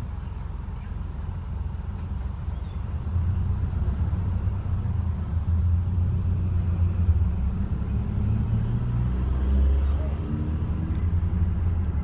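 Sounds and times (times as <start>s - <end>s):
bus engine and road noise: 0.0s - 12.0s.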